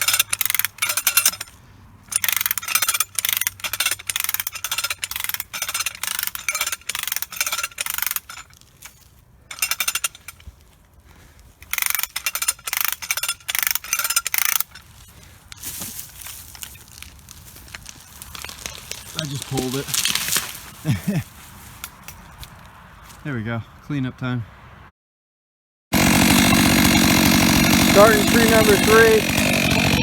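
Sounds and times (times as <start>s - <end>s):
come-along ratcheting clicks: 0.0s - 10.5s, 11.6s - 14.9s, 26.0s - 30.0s.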